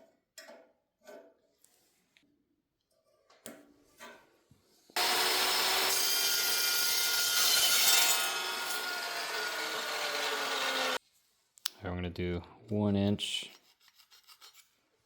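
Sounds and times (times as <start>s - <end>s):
power tool cutting steel: 5.0s - 11.0s.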